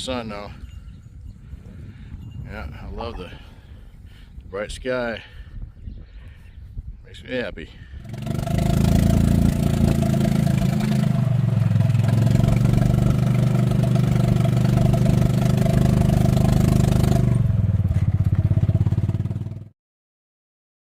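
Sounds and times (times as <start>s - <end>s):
vehicle engine running: 8.0s - 19.7s.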